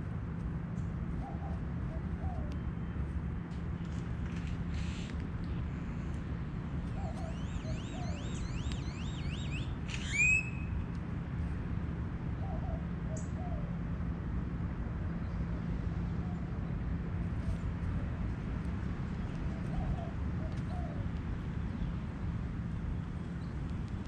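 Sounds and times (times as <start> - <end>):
birds whistling calls: 6.9 - 10.8, 19.4 - 21.0.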